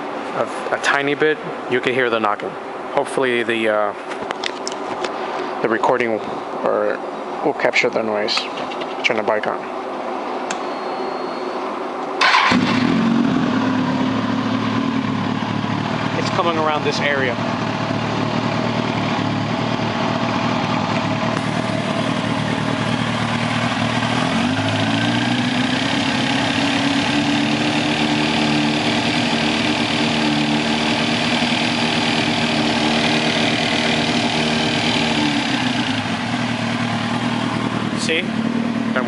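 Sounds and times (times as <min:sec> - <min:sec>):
engine revving: 0:12.2 - 0:39.0
motorcycle engine idling: 0:12.3 - 0:39.0.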